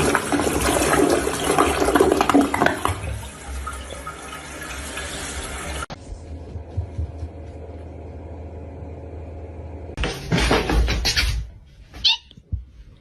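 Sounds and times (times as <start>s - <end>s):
water running: 0.0s - 7.2s.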